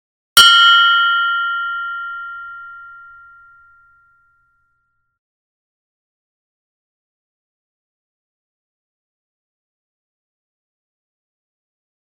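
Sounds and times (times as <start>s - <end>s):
metallic bell ringing: 0.4s - 4.7s.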